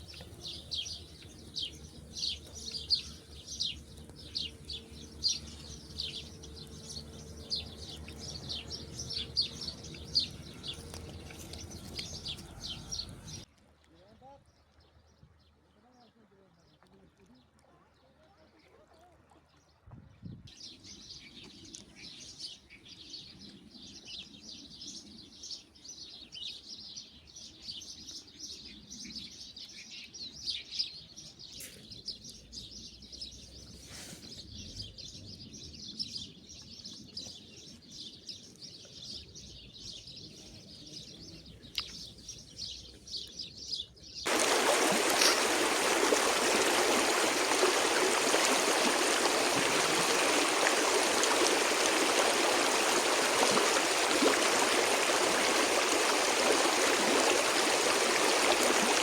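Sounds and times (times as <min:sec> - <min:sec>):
small birds chirping: 0:00.0 - 0:13.4, 0:20.5 - 0:59.0
stream water rushing: 0:00.0 - 0:13.4, 0:44.3 - 0:59.0.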